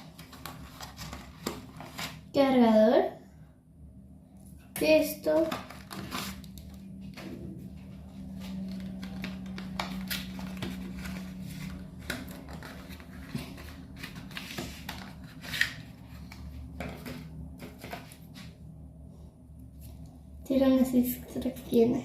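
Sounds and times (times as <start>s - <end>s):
packaging clicks taps and rustles: 8.6s - 15.7s.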